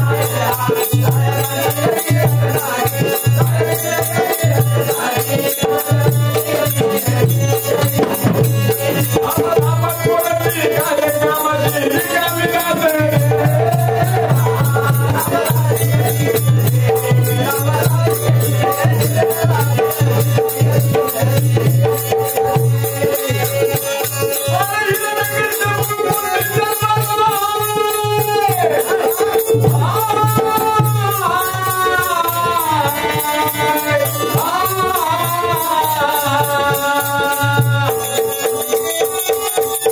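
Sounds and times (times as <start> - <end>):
person singing folk song: 0.0 - 21.7, 24.5 - 38.8
fast percussion beat: 0.0 - 39.9.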